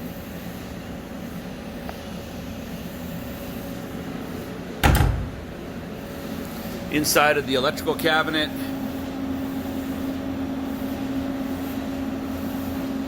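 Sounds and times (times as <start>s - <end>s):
loud thump: 4.8s - 5.5s.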